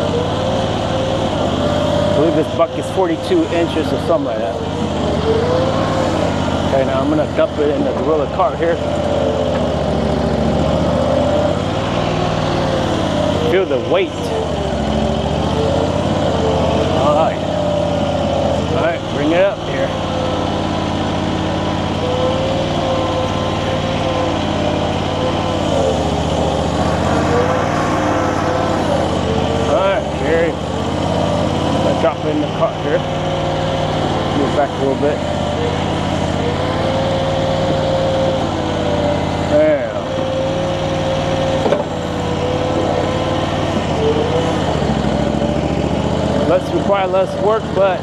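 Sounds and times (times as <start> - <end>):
wavering high whine: 0.0 - 35.2
skid steer engine running: 0.0 - 48.0.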